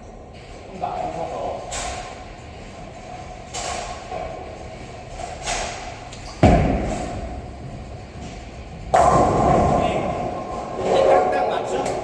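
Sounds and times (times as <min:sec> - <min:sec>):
bowling pins crashing: 0:06.4 - 0:07.9, 0:08.9 - 0:12.0
bowling alley rumble: 0:06.4 - 0:12.0.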